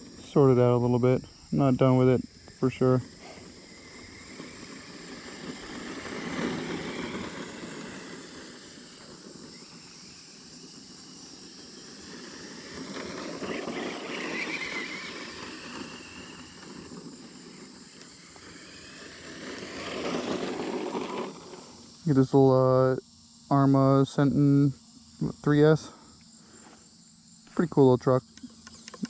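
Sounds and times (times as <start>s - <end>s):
rising and falling whine: 0.0s - 22.9s
crickets chirping: 0.0s - 29.0s
rushing noise: 3.1s - 22.0s.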